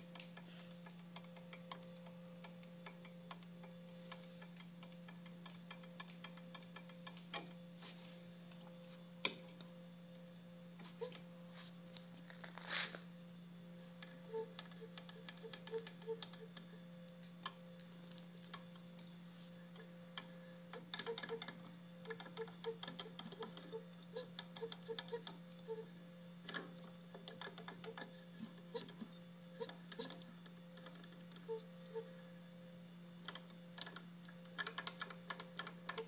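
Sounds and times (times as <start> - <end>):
steady low hum: 0.0 - 36.0.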